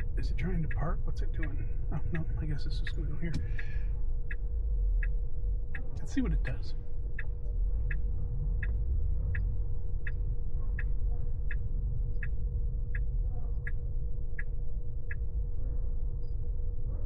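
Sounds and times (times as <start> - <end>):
turn signal ticking: 0.0 - 15.3
low road rumble: 0.0 - 17.0.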